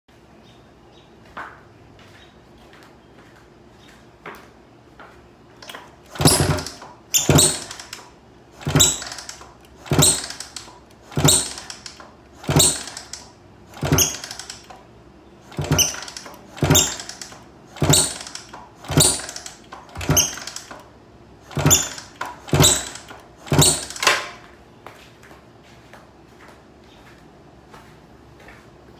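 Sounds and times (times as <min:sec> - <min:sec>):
motorcycle squeaking: 0:05.6 - 0:08.0, 0:08.6 - 0:14.7, 0:15.3 - 0:20.8, 0:21.5 - 0:24.4.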